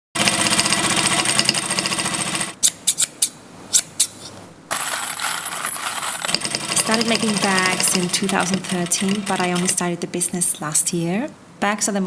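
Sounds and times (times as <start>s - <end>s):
sewing machine stitching: 6.0s - 9.8s.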